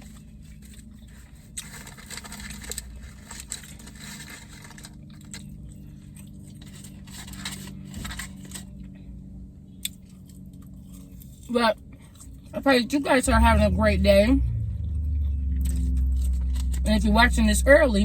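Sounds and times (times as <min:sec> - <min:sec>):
steady low hum: 0:00.0 - 0:18.0
food packaging handled: 0:00.2 - 0:08.8
chewing noises: 0:09.8 - 0:12.5.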